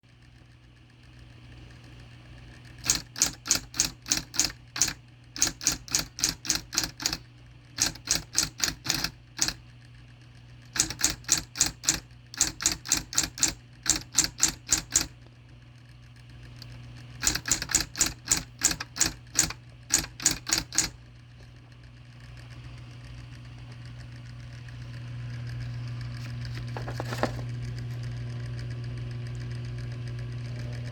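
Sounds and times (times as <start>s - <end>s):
steady electric hum: 0.1s - 30.9s
typewriter key strikes: 2.8s - 7.2s, 7.8s - 9.6s, 10.8s - 15.1s, 17.2s - 21.0s.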